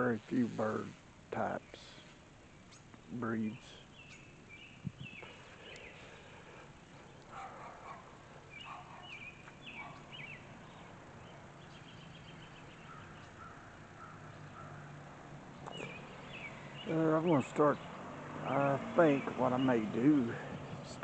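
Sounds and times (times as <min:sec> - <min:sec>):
birds chirping: 0:00.0 - 0:21.0
rough bird calls: 0:00.0 - 0:21.0
bird trill of ticks: 0:03.7 - 0:06.1, 0:07.0 - 0:14.8.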